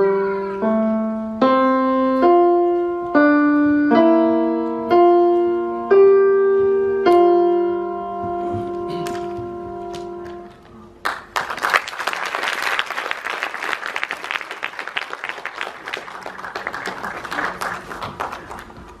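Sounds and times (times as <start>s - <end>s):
piano chord: 0.0s - 10.9s
audience applauding: 11.0s - 19.0s.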